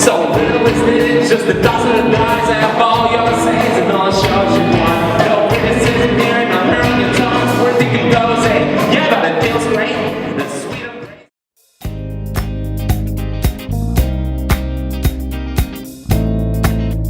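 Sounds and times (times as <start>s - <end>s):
rock band with singing: 0.0s - 11.3s.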